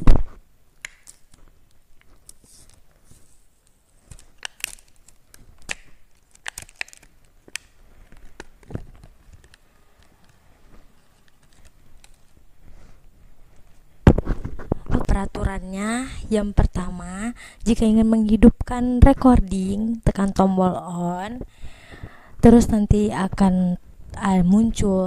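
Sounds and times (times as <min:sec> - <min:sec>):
packaging crinkling: 0:00.8 - 0:12.5
packaging clicks and taps: 0:04.0 - 0:10.4.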